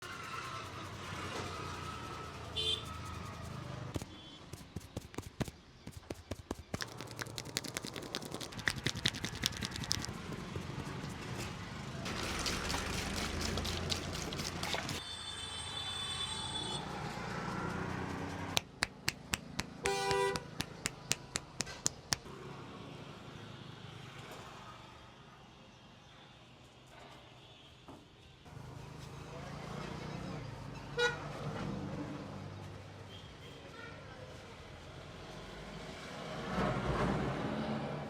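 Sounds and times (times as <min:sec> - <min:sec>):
street traffic noise: 0:00.0 - 0:38.0
vehicle horn: 0:02.6 - 0:03.2, 0:19.8 - 0:20.5
hand slaps on a head: 0:18.6 - 0:22.3.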